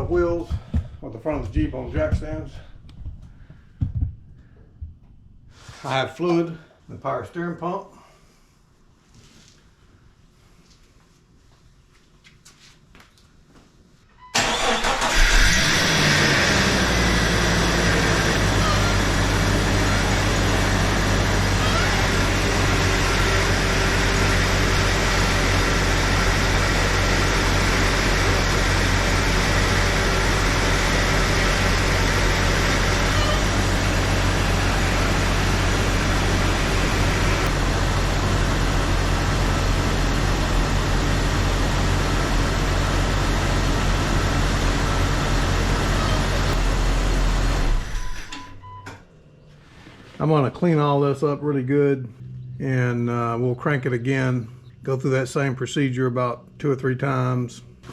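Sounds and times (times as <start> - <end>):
car engine idling: 14.4 - 48.0.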